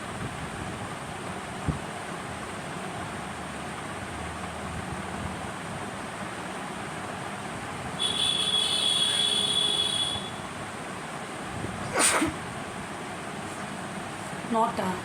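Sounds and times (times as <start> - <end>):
woman sneezing: 11.9 - 12.4.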